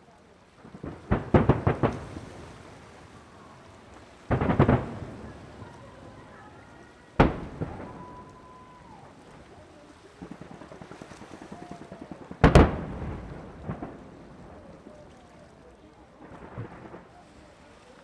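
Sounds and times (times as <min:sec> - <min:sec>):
fireworks bursting: 0:00.6 - 0:18.0
faint steady whistle: 0:07.7 - 0:09.1.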